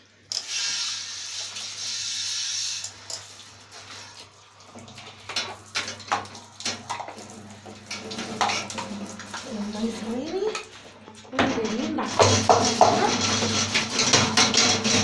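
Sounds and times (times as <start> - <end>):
shower water spraying: 0.3 - 15.0
plastic parts knocking and clattering: 11.3 - 15.0.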